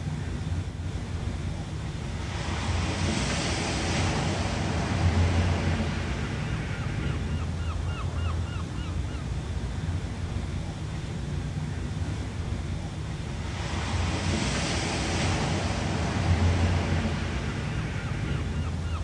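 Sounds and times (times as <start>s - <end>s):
low surf rumble: 0.0s - 19.0s
ocean wave hissing: 0.9s - 7.9s, 12.1s - 18.9s.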